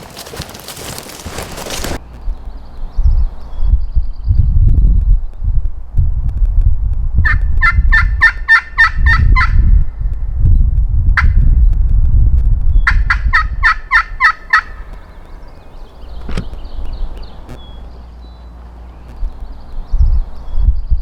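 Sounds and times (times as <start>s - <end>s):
wind rumble on microphone: 0.0s - 21.0s
turkey yelps on slate call: 7.2s - 9.6s, 12.9s - 15.0s.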